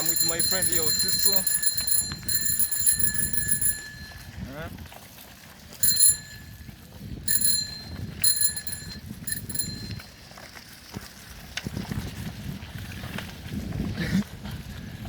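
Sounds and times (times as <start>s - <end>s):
bicycle bell ringing: 0.0s - 4.6s, 5.8s - 10.2s.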